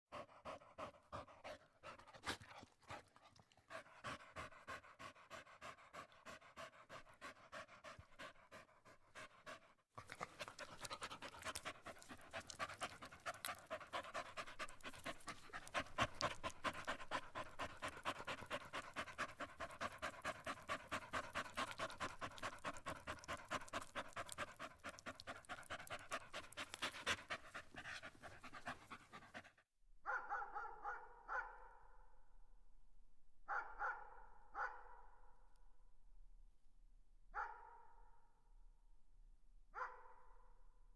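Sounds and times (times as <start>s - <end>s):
dog panting: 0.1s - 29.6s.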